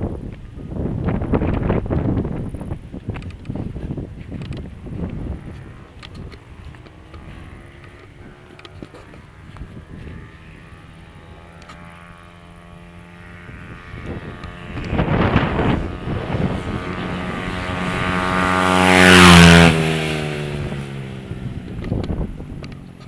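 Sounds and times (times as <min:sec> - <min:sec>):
dirt bike passing by: 0:00.0 - 0:23.0.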